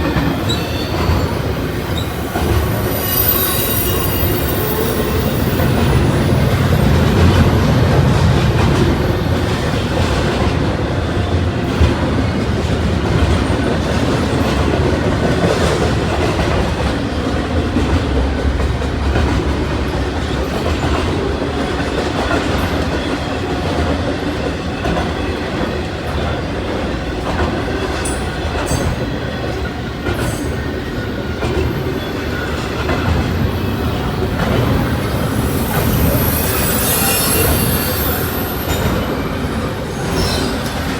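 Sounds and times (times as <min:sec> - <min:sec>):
train wheels clacking on rails: 0:00.0 - 0:40.9
faint wheel squeal: 0:00.2 - 0:06.6, 0:31.8 - 0:40.9.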